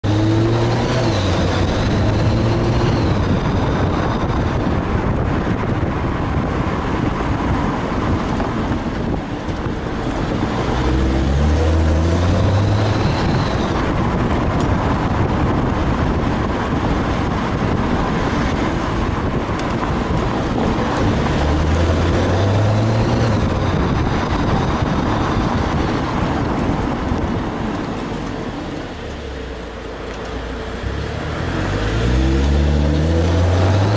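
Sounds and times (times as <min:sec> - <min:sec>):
car engine accelerating: 0:00.0 - 0:33.9
road noise: 0:00.0 - 0:33.9.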